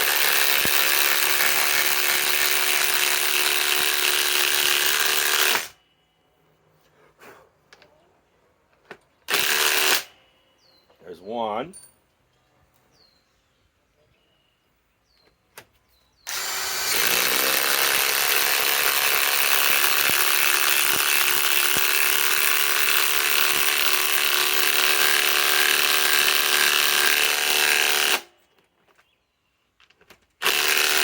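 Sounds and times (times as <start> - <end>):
impact wrench hammering: 16.3 - 28.2.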